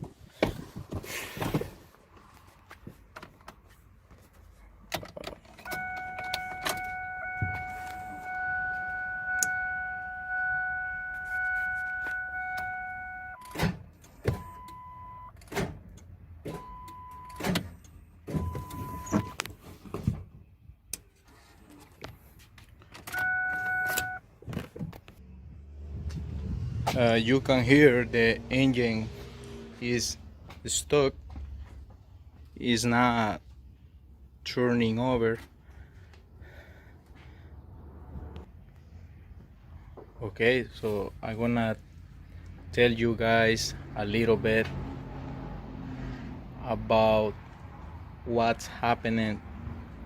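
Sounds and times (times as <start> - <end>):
dashboard warning chime: 5.7 - 13.7, 14.4 - 15.4, 16.6 - 17.5, 18.4 - 19.4, 23.1 - 24.2
short repeating beeps: 23.2 - 24.2.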